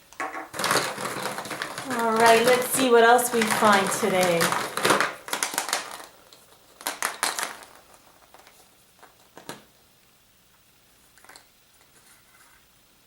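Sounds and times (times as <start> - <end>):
wrapping crinkling: 0.5 - 9.7.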